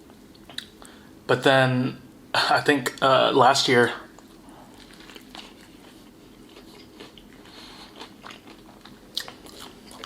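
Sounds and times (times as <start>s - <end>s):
person chewing food: 4.1s - 10.0s.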